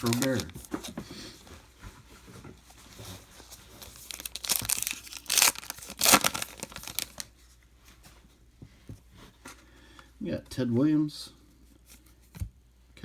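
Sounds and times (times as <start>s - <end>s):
wrapper being torn open: 0.0s - 0.7s, 3.8s - 7.3s.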